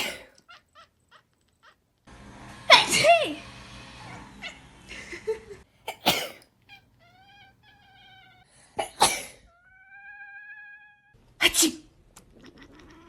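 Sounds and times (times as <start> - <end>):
cat meowing: 6.6 - 8.5, 9.5 - 11.2, 12.3 - 13.0.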